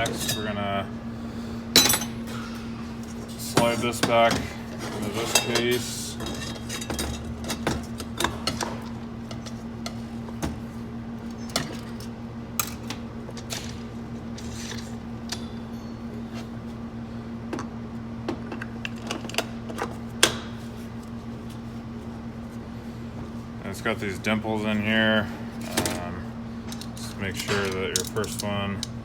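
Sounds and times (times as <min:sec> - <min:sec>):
steady low hum: 0:00.0 - 0:29.0
metallic clicks and clinks of parts: 0:26.7 - 0:29.0.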